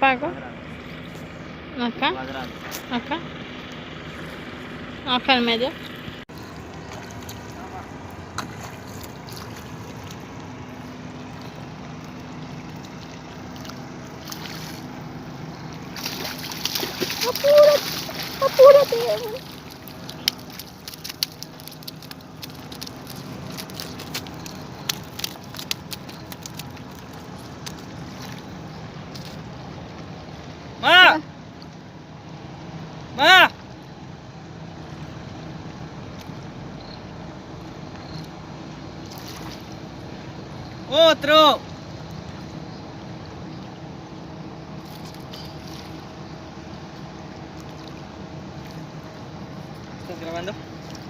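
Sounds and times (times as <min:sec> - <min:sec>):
steady low hum: 0:00.0 - 0:40.9
light splashes: 0:05.8 - 0:30.7, 0:39.0 - 0:40.9, 0:44.7 - 0:51.0
small clicks and ticks: 0:19.8 - 0:28.4.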